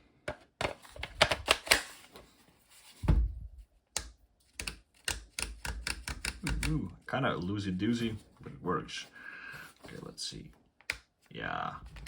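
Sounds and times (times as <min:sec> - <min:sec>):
sharp plastic clicks: 0:03.9 - 0:06.8.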